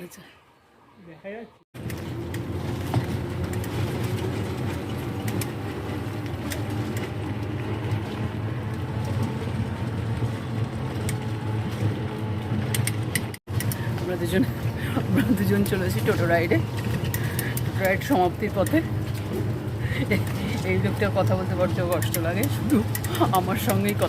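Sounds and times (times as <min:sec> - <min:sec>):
light clicks and rattles: 0:01.8 - 0:09.4, 0:12.5 - 0:24.0
electric rickshaw rumbling: 0:01.8 - 0:24.0.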